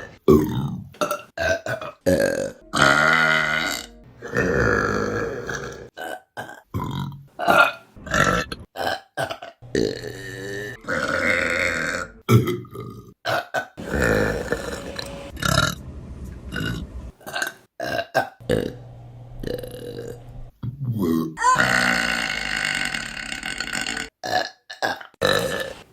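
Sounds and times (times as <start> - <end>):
women burping: 0.4 - 5.9, 9.2 - 15.1, 21.4 - 25.7.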